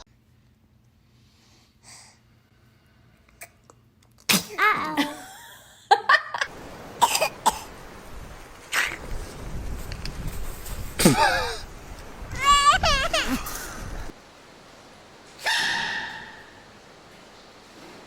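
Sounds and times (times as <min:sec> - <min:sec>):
baby sneezing: 0:04.2 - 0:05.1, 0:15.4 - 0:16.4.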